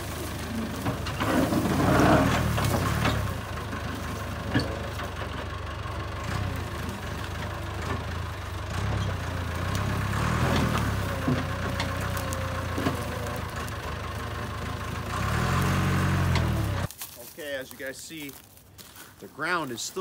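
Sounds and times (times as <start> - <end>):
diesel engine running: 0.0 - 20.0.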